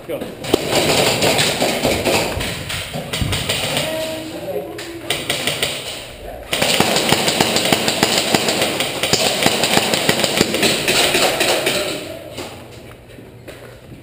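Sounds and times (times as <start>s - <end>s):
airsoft gun full-auto burst: 0.5s - 2.2s, 6.5s - 12.0s.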